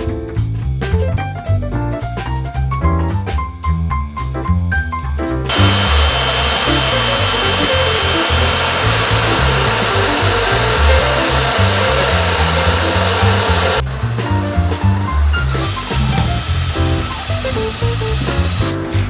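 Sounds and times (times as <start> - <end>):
background music with bass: 0.0 - 19.0
vacuum cleaner running: 5.5 - 19.0.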